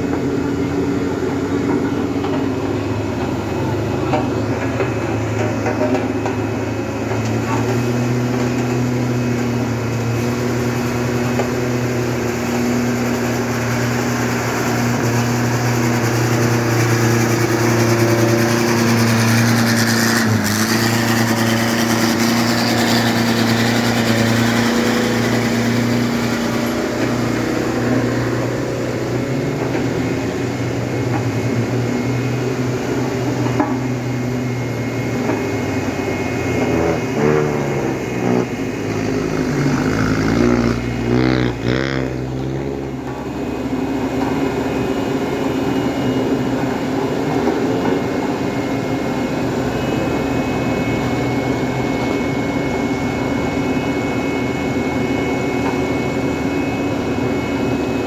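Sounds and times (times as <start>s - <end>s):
heavy vehicle engine revving: 0.0s - 45.7s.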